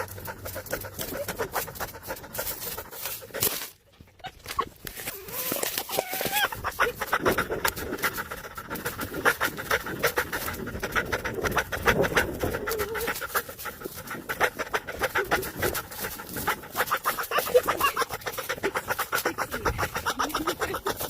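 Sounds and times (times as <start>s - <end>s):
fox chattering calls: 6.0s - 21.0s.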